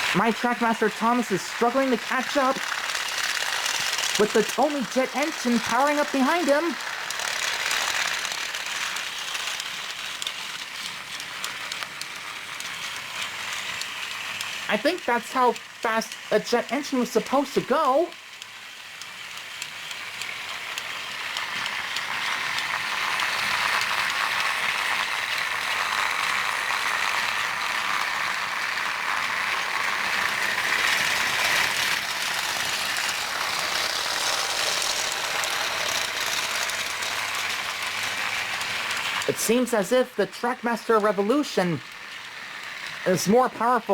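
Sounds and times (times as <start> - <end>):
fine rapid ticking: 0.0 - 24.1
toy train motors whirring: 0.0 - 43.9.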